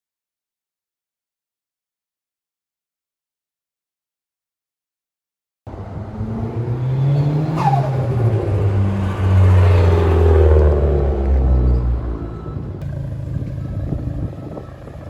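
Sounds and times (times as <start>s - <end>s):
car engine under throttle: 5.7s - 15.0s.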